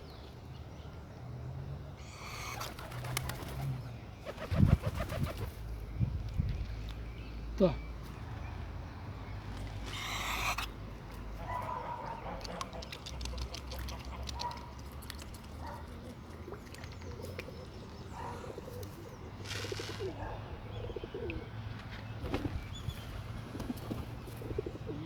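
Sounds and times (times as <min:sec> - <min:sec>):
birds calling and cooing: 0:01.9 - 0:25.0
wings flapping: 0:02.5 - 0:05.6.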